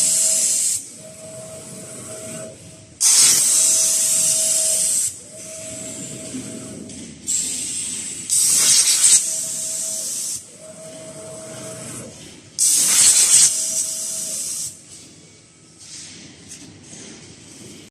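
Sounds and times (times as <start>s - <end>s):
machine motor whine: 0.0s - 7.0s, 7.6s - 14.7s
loud hissing bursts: 12.6s - 14.7s.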